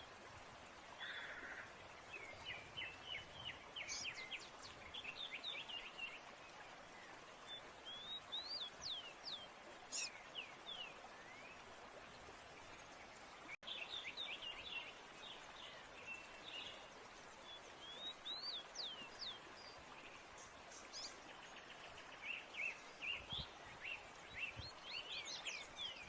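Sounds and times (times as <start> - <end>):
small birds chirping: 1.0 - 11.6.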